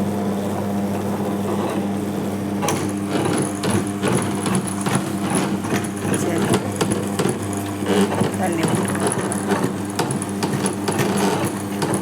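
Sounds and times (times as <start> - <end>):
electric grinder motor hum: 1.0 - 12.0
grinder knocks and rattles: 2.6 - 12.0.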